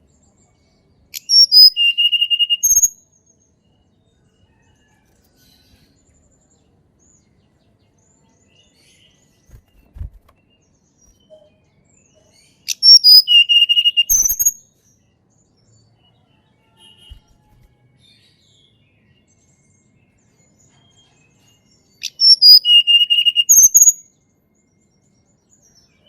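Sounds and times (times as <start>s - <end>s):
bird call with whistle: 12.7s - 14.5s, 22.0s - 24.0s.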